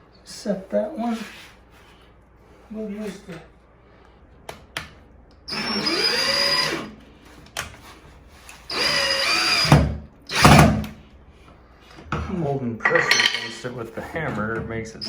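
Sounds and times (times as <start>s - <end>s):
power drill driving screws: 5.5s - 7.0s, 8.7s - 11.0s.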